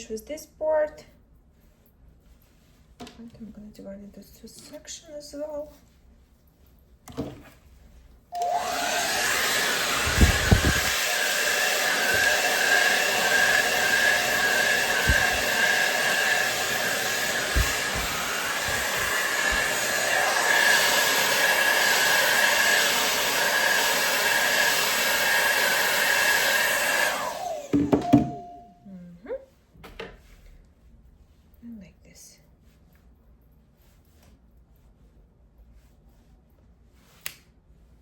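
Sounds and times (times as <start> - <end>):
hair dryer running: 8.3 - 28.7.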